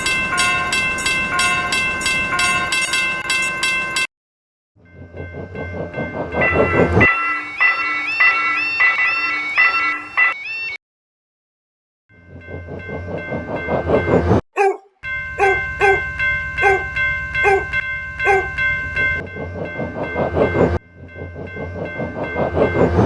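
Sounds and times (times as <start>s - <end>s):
crossing bell clanging: 0.0s - 4.1s, 4.8s - 10.7s, 12.2s - 14.4s, 15.0s - 23.0s
steady ringing tones: 4.8s - 10.4s, 15.0s - 23.0s
cartoon train clatter: 5.0s - 9.0s, 12.4s - 14.4s, 15.4s - 23.0s.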